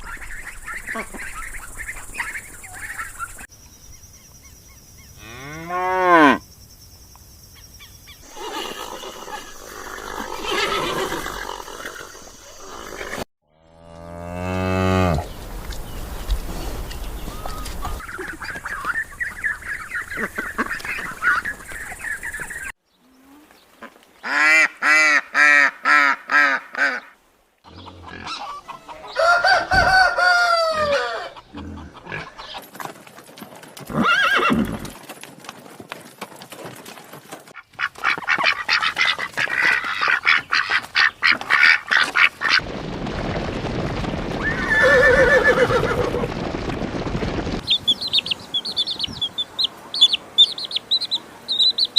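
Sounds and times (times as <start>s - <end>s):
farm birds calling: 0.0s - 3.5s, 14.1s - 32.9s, 37.5s - 42.6s, 47.6s - 51.9s.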